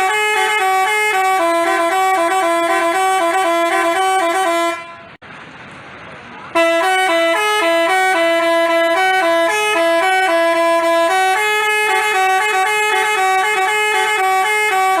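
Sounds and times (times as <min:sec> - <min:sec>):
bus horn playing a quick tune: 0:00.0 - 0:05.2, 0:06.5 - 0:15.0.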